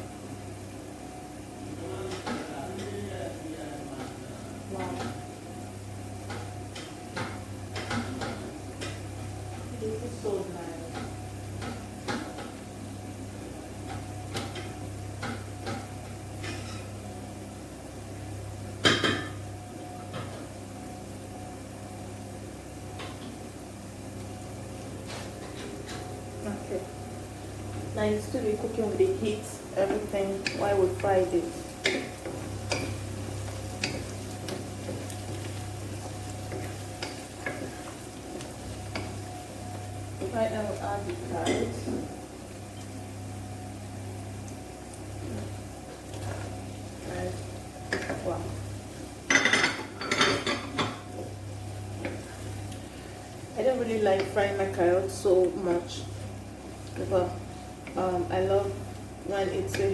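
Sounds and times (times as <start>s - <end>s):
sausage sizzling in a frying pan: 0.0s - 59.9s
steady low hum: 0.0s - 59.9s
utensil clicking against pan: 29.8s - 31.1s, 31.7s - 39.2s
cookware and utensils clinking: 49.3s - 51.1s.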